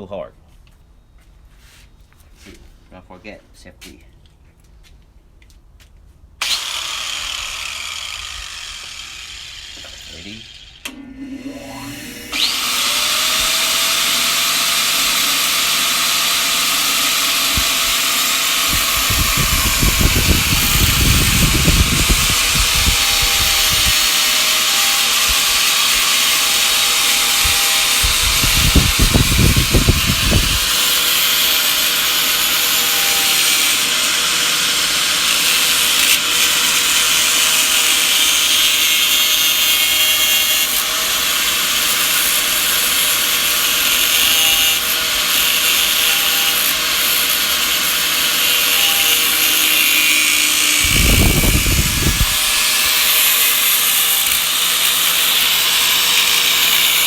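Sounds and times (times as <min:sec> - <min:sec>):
cutting disc grinding metal: 0:06.4 - 0:57.0
low rumbling bursts: 0:18.6 - 0:24.0, 0:27.3 - 0:30.6, 0:50.7 - 0:52.6.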